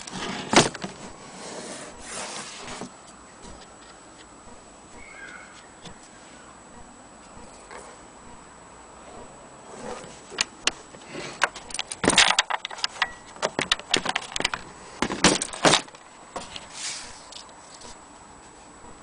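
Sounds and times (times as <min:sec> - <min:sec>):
hard parts clicking and rattling: 0:00.0 - 0:01.1, 0:09.8 - 0:17.9.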